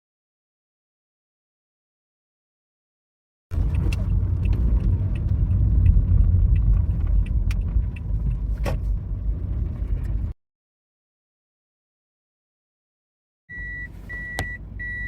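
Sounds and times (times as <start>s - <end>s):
vehicle rumbling on the move: 3.5s - 10.4s, 13.5s - 15.0s.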